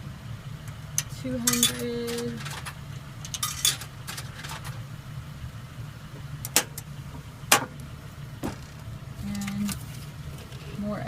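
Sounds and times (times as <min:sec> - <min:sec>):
steady low hum: 0:00.0 - 0:11.0
coins clinking into machine: 0:01.4 - 0:04.8.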